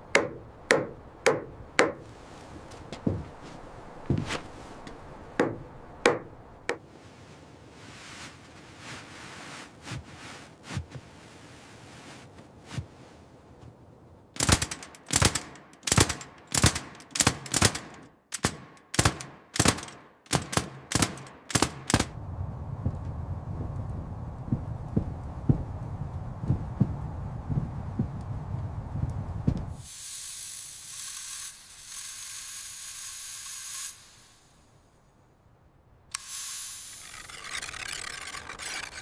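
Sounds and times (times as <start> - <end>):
tools knocking on wood: 0.2 - 2.0, 5.4 - 6.3
hard blows on wood: 22.8 - 30.4
rasping strokes on wood: 36.9 - 39.0.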